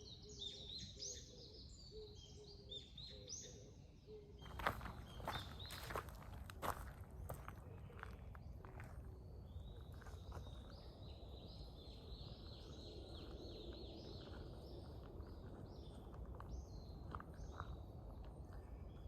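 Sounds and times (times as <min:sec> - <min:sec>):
bird singing faintly: 0:00.0 - 0:06.2, 0:07.3 - 0:19.0
low outdoor rumble: 0:06.0 - 0:19.0.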